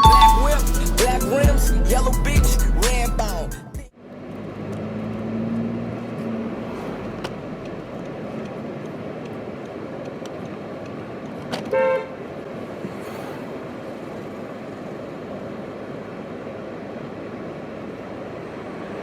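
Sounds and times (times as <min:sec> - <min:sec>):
car horn toot: 0:00.0 - 0:01.2, 0:11.5 - 0:12.4
street traffic noise: 0:00.0 - 0:19.0.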